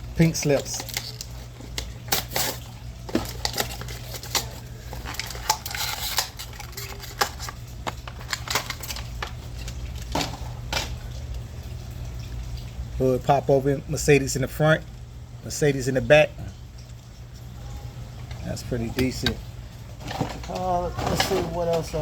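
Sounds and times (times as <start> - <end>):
plastic packaging cracking open: 0.5 - 10.2.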